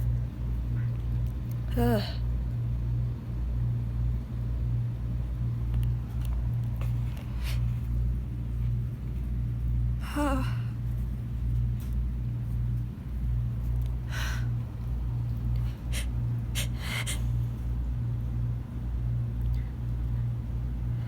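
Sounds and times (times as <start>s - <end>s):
steady low hum: 0.0s - 21.0s
person breathing: 15.6s - 17.5s
sharp inhale: 15.7s - 17.4s.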